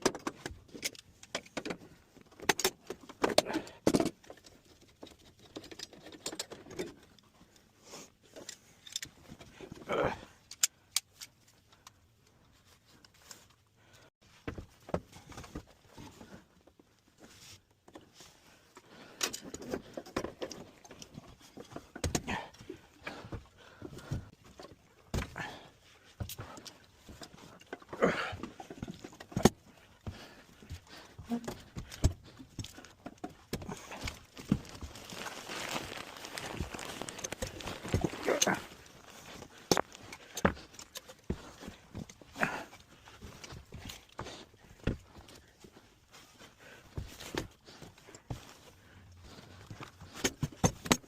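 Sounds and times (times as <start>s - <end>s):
clicks and taps of plumbing parts: 0.0s - 7.6s.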